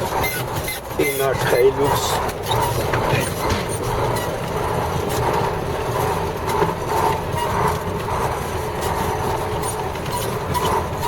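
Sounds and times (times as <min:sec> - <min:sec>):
diesel engine droning: 0:00.0 - 0:11.0
truck knocks on rough road: 0:02.2 - 0:04.2.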